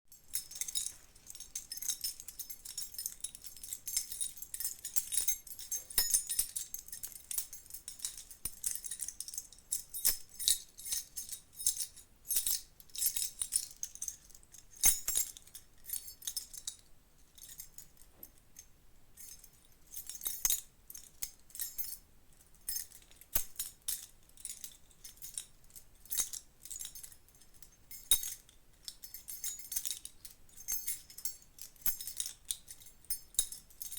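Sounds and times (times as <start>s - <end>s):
metal keys jangling: 0.1s - 33.9s.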